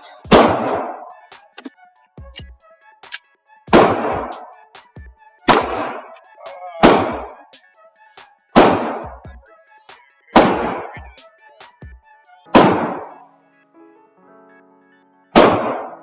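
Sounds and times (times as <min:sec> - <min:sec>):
pistol shots: 0:00.3 - 0:01.1, 0:03.1 - 0:04.5, 0:05.5 - 0:06.2, 0:06.8 - 0:07.4, 0:08.6 - 0:09.2, 0:10.4 - 0:11.0, 0:12.5 - 0:13.2, 0:15.4 - 0:16.0.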